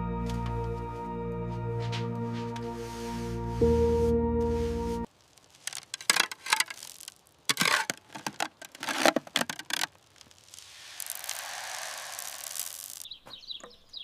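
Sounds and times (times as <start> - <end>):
scraping and rustling handling: 4.5 - 11.4.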